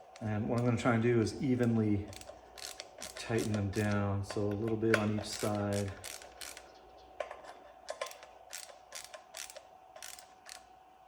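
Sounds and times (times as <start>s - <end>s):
hand tool clicking on screws: 1.6s - 6.7s, 8.0s - 10.6s.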